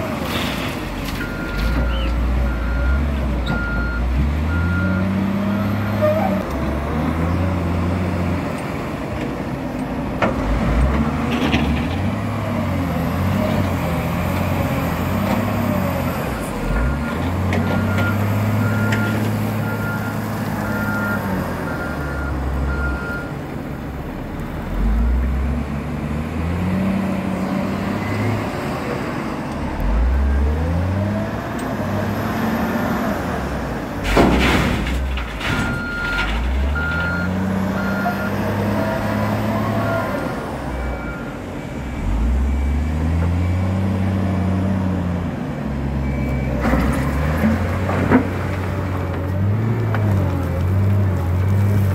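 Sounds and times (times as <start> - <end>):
diesel engine revving: 0.0 - 9.1, 10.3 - 51.9
reversing alarm beeping: 35.5 - 38.4.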